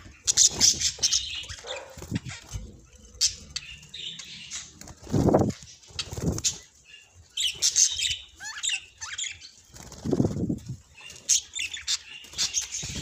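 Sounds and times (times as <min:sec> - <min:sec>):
budgies chirping: 0:00.0 - 0:13.0
wing flapping: 0:00.3 - 0:02.6, 0:04.6 - 0:06.7, 0:09.7 - 0:10.8.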